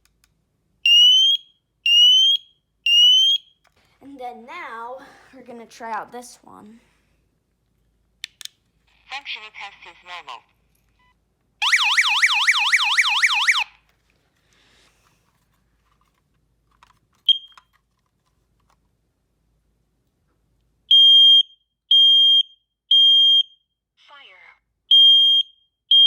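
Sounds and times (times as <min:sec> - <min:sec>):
shrill smoke alarm beeps: 0:00.8 - 0:03.6, 0:11.6 - 0:13.6, 0:20.9 - 0:23.7, 0:24.9 - 0:26.0
warbling electronic alarm sweep: 0:11.6 - 0:13.7.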